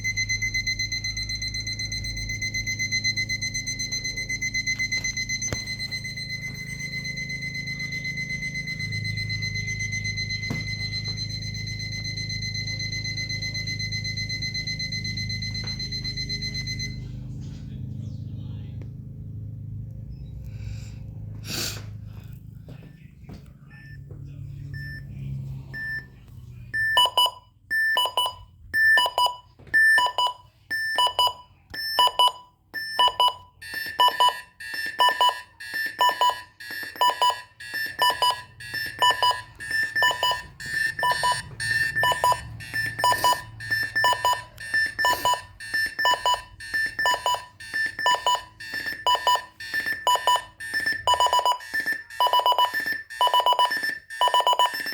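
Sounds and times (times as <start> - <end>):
alarm clock beeping: 0.0 - 17.3, 24.7 - 54.9
higher beeping tone: 26.8 - 54.9.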